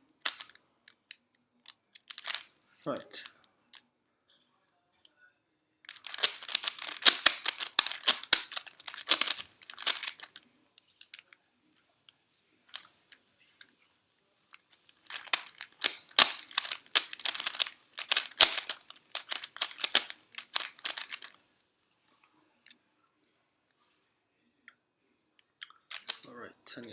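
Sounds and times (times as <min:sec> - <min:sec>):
puzzle cube clicking turns: 0:00.2 - 0:00.6, 0:01.9 - 0:02.5, 0:05.9 - 0:10.4, 0:14.5 - 0:21.4, 0:25.6 - 0:26.2.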